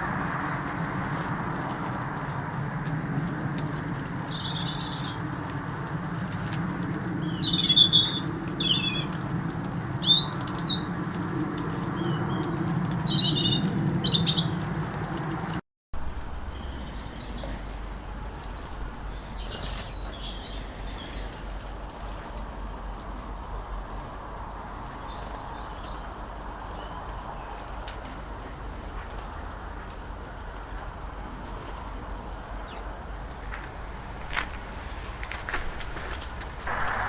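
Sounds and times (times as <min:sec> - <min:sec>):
small birds chirping: 0:00.0 - 0:15.6, 0:16.4 - 0:22.2
steady low rumble: 0:00.0 - 0:25.0, 0:33.0 - 0:37.0.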